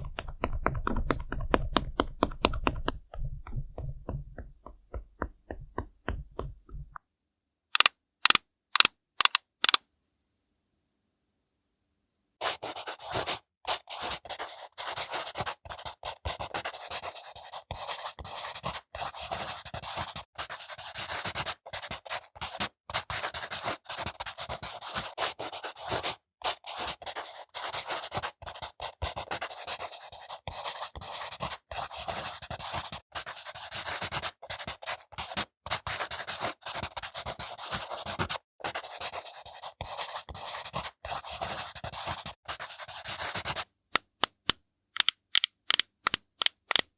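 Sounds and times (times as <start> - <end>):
makeup tool scratching fruit peel: 7.8 - 9.8, 44.0 - 46.9.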